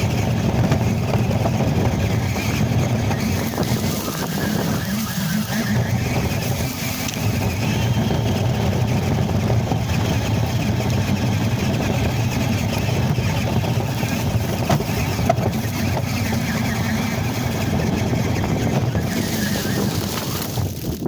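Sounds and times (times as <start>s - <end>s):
rc car running: 0.0s - 21.0s
wind rumble on microphone: 0.0s - 21.0s.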